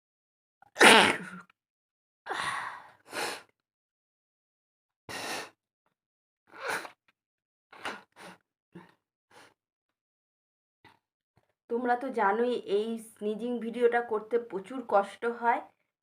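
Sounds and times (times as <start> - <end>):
woman gasping and sniffing: 2.3 - 3.5, 5.1 - 5.6, 6.6 - 7.0.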